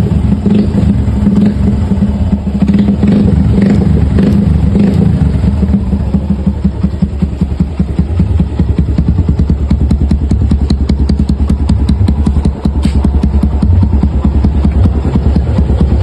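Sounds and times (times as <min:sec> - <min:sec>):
motorcycle engine idling: 0:00.0 - 0:16.0
rapid knocking clatter: 0:05.6 - 0:16.0.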